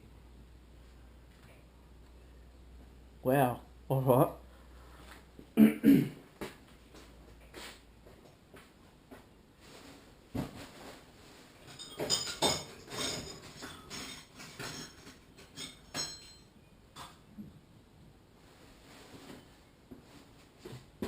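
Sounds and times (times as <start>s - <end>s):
metal parts clinking and clattering: 11.7s - 16.5s.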